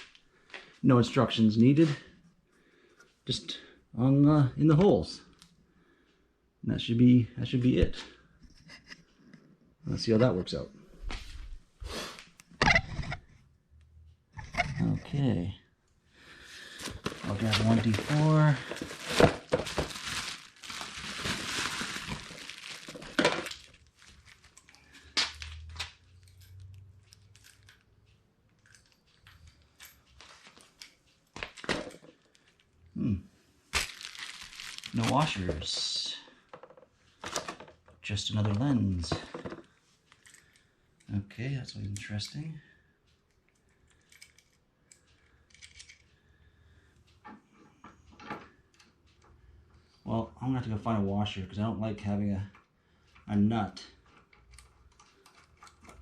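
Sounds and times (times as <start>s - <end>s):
packaging rustling and crinkling: 16.6s - 27.6s, 33.7s - 35.8s
parts clicking and knocking: 34.8s - 40.7s, 43.1s - 46.2s, 54.0s - 56.0s.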